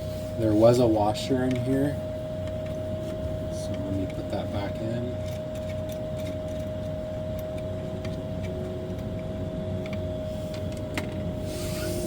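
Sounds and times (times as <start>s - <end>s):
background hum with high tone: 0.0s - 12.0s
small parts clicking and tapping: 5.2s - 11.2s.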